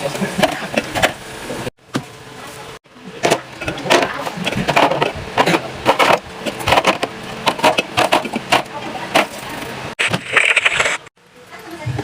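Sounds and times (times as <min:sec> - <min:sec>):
plastic containers clattering: 0:03.2 - 0:11.0.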